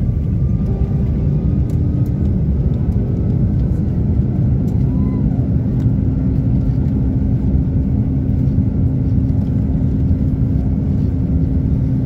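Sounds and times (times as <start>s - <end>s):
jet engines rumbling: 0.0s - 12.0s.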